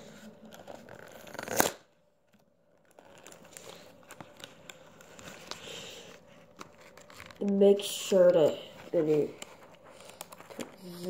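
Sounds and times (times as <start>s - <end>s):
tape and cardboard crinkling: 0.0s - 11.0s
tape ripping: 0.5s - 1.9s.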